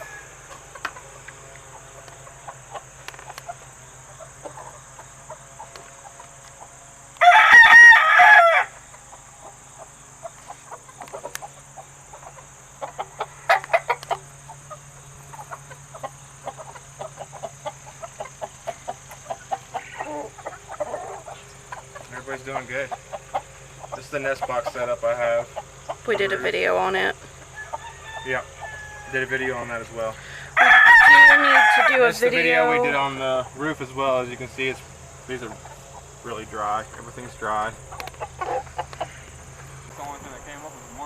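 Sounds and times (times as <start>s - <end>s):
rooster crowing: 0.0s - 2.5s, 7.2s - 8.9s, 27.3s - 33.2s
chickens clucking: 0.0s - 7.7s, 8.6s - 41.0s.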